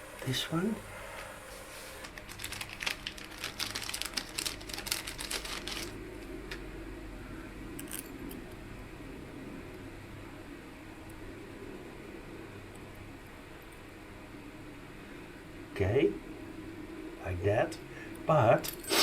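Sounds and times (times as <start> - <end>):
low steady hum: 0.0 - 19.0
small metal parts clicking: 7.8 - 8.4.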